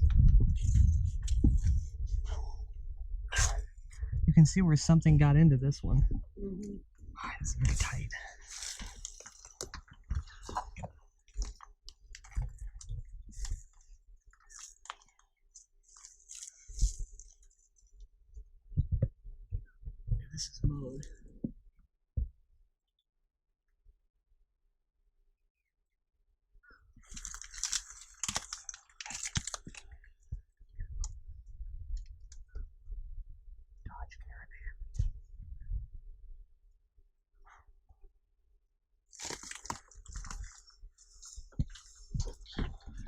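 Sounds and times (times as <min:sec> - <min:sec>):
low rumble: 0:00.0 - 0:08.3
clicks and crackles: 0:07.6 - 0:17.6, 0:27.0 - 0:30.1, 0:39.1 - 0:43.0
crunching rustling: 0:27.0 - 0:30.0, 0:39.1 - 0:43.0.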